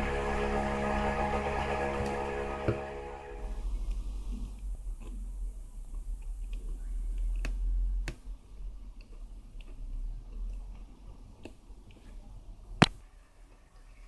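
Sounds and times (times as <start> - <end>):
low hum: 0.0 - 6.8.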